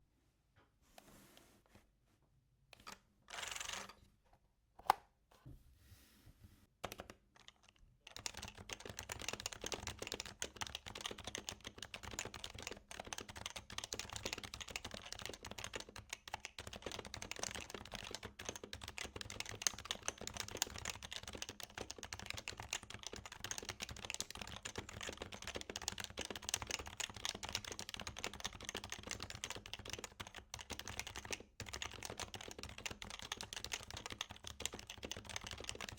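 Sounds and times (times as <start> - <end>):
fast keyboard typing: 6.8 - 35.9.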